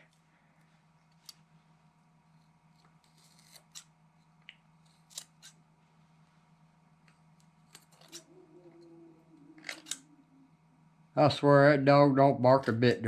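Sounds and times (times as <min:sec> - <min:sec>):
steady low hum: 0:00.0 - 0:13.0
scissors snipping: 0:02.8 - 0:03.9, 0:04.8 - 0:05.6, 0:07.4 - 0:08.3.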